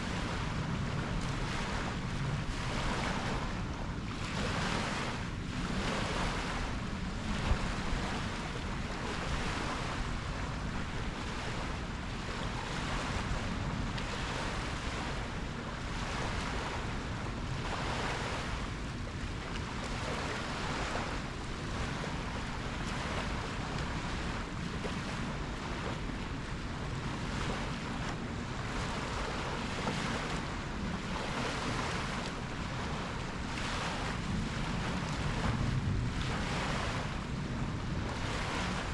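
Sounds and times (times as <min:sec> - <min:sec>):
ocean waves breaking: 0:00.0 - 0:38.9
wind buffeting microphone: 0:00.0 - 0:38.9.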